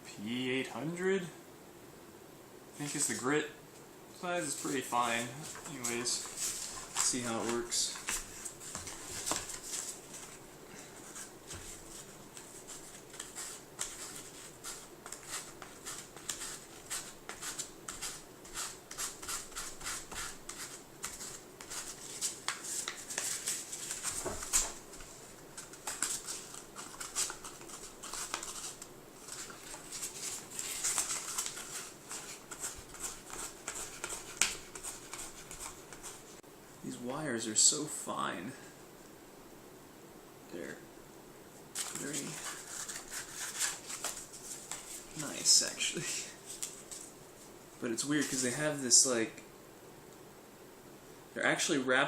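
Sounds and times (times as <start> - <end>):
sandpaper scratching wires: 12.4 - 24.1.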